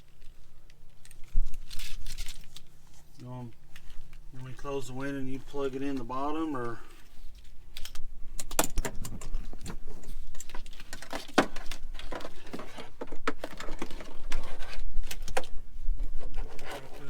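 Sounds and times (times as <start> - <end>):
cable and plug clicking and rattling: 7.4 - 15.6.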